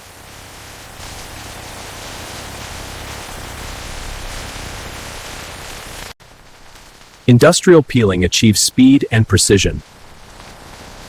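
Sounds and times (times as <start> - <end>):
processing line hiss: 0.0 - 11.0.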